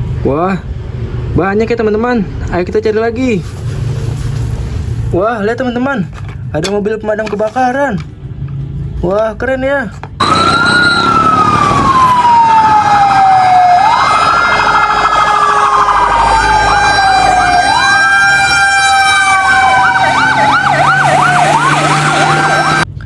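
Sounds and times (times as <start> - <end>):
fast siren warble: 10.2 - 22.8
toy siren wailing: 10.2 - 22.8.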